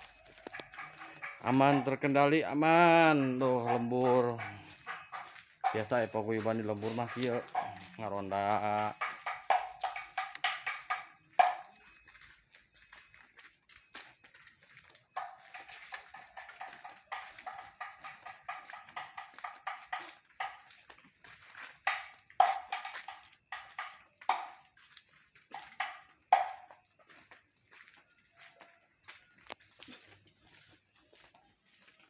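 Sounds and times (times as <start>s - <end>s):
hollow knocks on slit drum: 8.5s - 11.7s, 25.7s - 26.7s.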